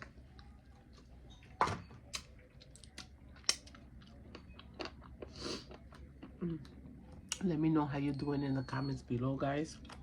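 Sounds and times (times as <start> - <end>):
chewing with mouth clicks: 2.1 - 7.5.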